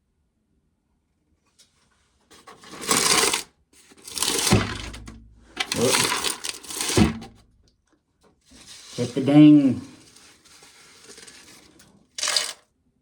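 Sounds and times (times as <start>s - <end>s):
corn kernels rattling and pouring: 2.3s - 7.3s, 8.6s - 12.6s.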